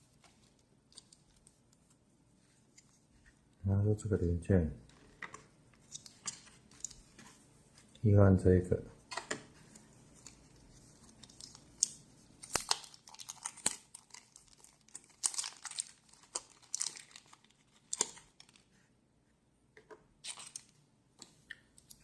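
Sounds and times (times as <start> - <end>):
small parts clicking and scraping: 0.2 - 1.8
crinkling rustles: 9.1 - 18.9.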